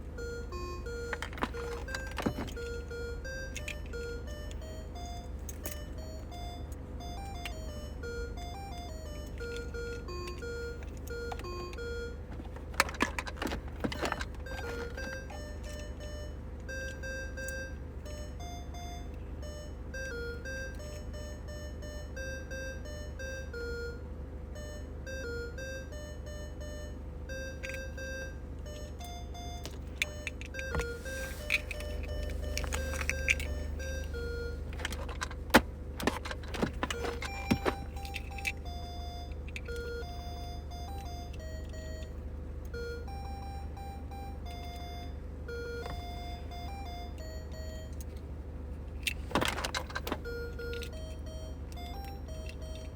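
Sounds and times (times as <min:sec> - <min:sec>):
electronic toy beeping tune: 0:00.0 - 0:48.1, 0:49.2 - 0:52.9
sharp clicks and knocks: 0:29.7 - 0:38.6.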